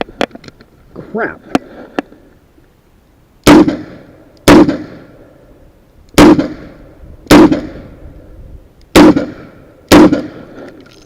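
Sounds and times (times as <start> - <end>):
revolver shots with echo: 6.2 - 7.9, 9.0 - 10.4.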